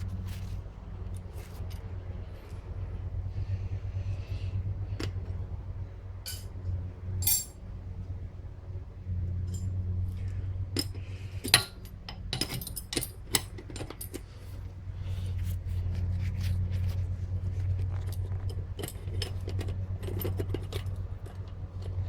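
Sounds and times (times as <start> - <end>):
steady low hum: 0.0 - 22.0
wrench clinking on metal fittings: 6.3 - 6.5, 7.2 - 7.6, 10.8 - 14.2.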